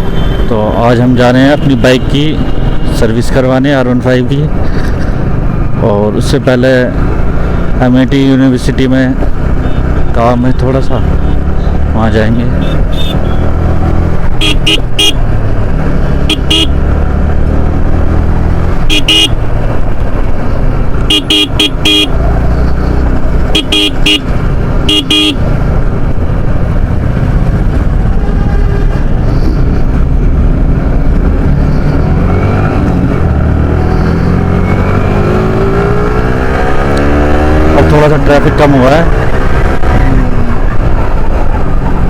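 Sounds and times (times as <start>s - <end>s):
road noise: 0.0s - 42.0s
motorcycle engine: 9.2s - 42.0s
horn beeps: 12.6s - 13.4s, 14.4s - 15.2s, 21.1s - 22.2s, 23.5s - 24.3s, 24.9s - 25.4s.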